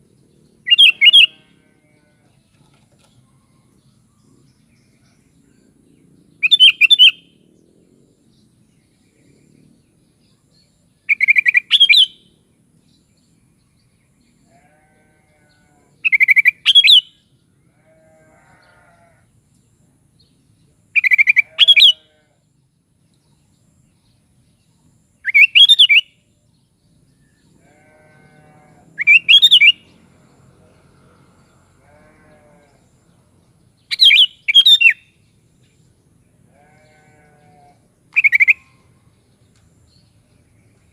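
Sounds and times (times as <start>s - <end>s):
bird singing bubbling phrases: 0.6s - 1.3s, 38.2s - 38.8s
faint lower bird calls: 0.6s - 5.7s, 6.4s - 7.4s, 14.4s - 19.3s, 21.0s - 22.6s, 24.7s - 26.3s, 27.2s - 29.9s, 30.8s - 33.0s, 33.8s - 35.2s, 36.5s - 40.9s.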